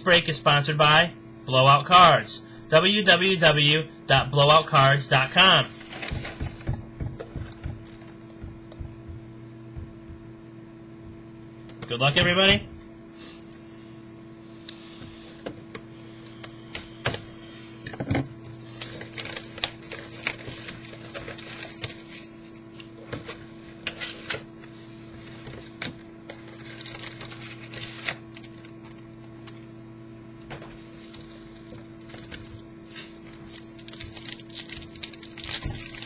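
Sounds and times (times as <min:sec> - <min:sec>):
low electrical hum: 0:00.0 - 0:36.0
card packaging crinkling: 0:18.6 - 0:22.3, 0:25.6 - 0:29.6, 0:30.8 - 0:36.0.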